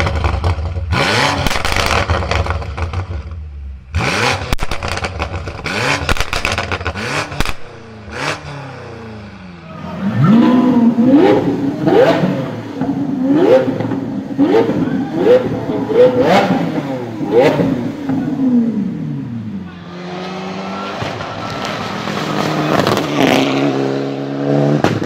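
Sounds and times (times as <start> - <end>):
exhaust pops and crackles: 0.0 - 3.4, 4.4 - 7.8, 21.0 - 23.3, 24.8 - 25.0
car engines revving: 0.0 - 25.0.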